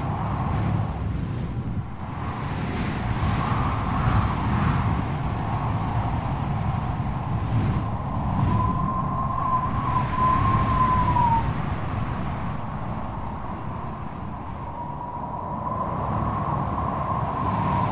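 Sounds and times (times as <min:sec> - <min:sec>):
storm wind gusting: 0:00.0 - 0:17.9
thin high whistle: 0:08.5 - 0:11.5.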